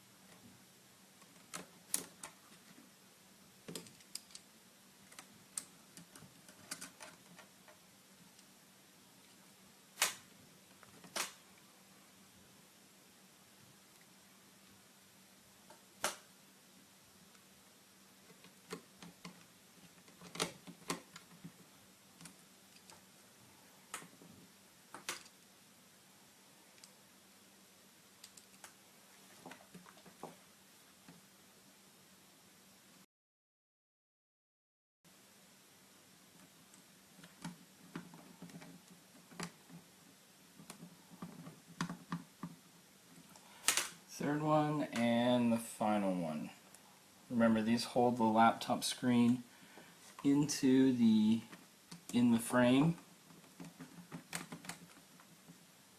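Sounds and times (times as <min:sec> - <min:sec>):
faint hiss: 0:00.0 - 0:33.1, 0:35.1 - 0:55.9
faint low hum: 0:35.1 - 0:55.9.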